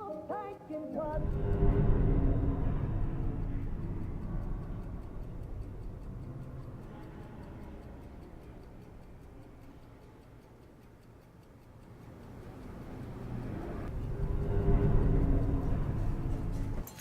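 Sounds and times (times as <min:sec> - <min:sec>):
steady ticking: 0:00.0 - 0:17.0
low rumble: 0:01.2 - 0:10.2, 0:12.4 - 0:16.9.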